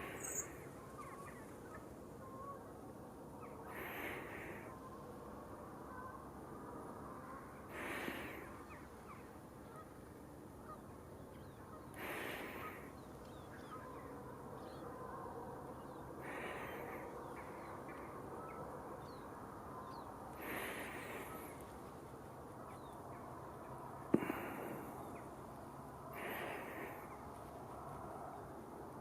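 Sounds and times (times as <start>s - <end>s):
distant bird calls: 0.0s - 2.8s, 3.4s - 6.3s, 7.0s - 27.4s
heavy breathing: 16.2s - 17.6s, 20.4s - 21.6s, 24.2s - 25.2s, 26.1s - 27.2s.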